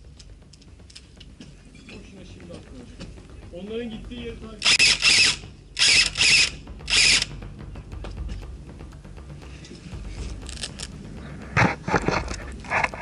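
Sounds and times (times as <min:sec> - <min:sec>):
airsoft machine gun bursts: 0:04.6 - 0:07.3.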